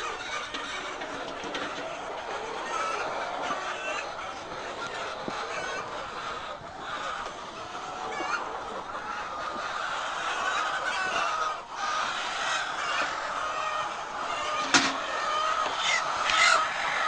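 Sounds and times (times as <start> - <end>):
hens clucking: 0.0 - 17.0.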